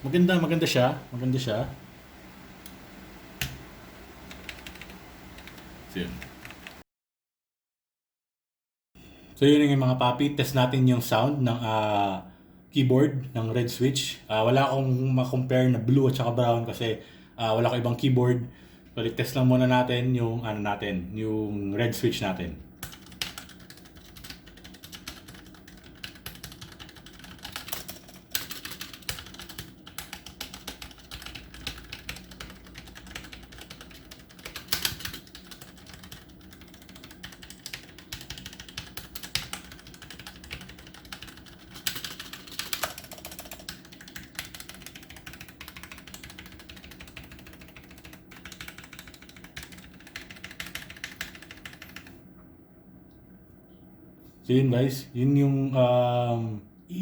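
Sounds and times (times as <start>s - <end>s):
mechanical keyboard typing: 0.0s - 6.8s, 22.8s - 52.2s.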